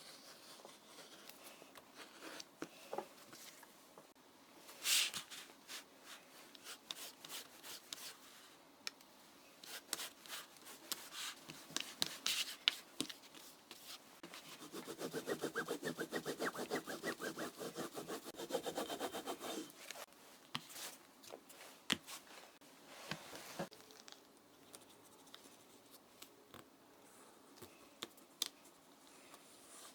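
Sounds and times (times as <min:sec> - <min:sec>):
fast rubbing strokes on leather: 0:14.6 - 0:19.6.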